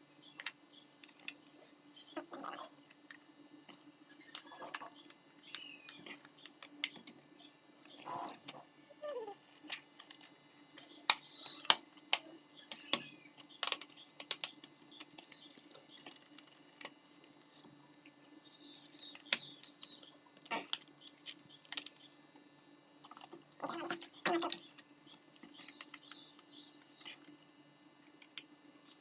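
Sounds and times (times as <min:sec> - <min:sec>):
plastic laptop parts clicking: 0:09.7 - 0:17.0, 0:19.1 - 0:20.1, 0:20.7 - 0:22.0, 0:23.9 - 0:27.0.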